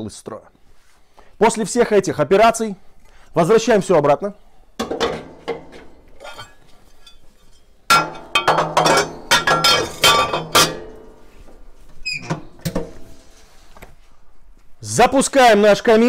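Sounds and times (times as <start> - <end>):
metal stove parts clanking: 4.8 - 13.3.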